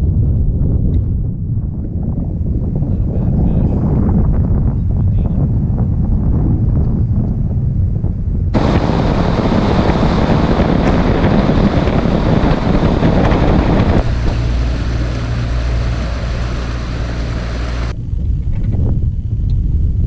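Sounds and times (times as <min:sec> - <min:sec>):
wind rush on microphone: 0:00.0 - 0:20.0
boat outboard engine drone: 0:08.6 - 0:18.0.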